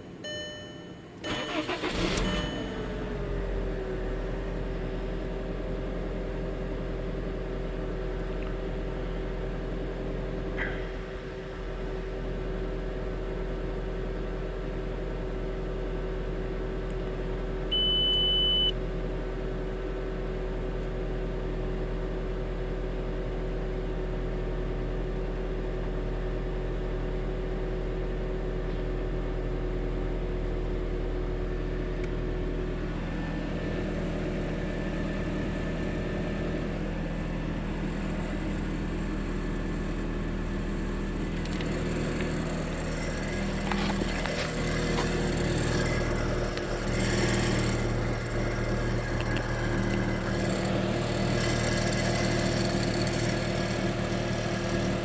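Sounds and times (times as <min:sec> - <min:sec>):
car engine droning: 0:00.0 - 0:24.0, 0:29.0 - 0:55.0
short beep: 0:00.2 - 0:03.1, 0:17.7 - 0:18.8.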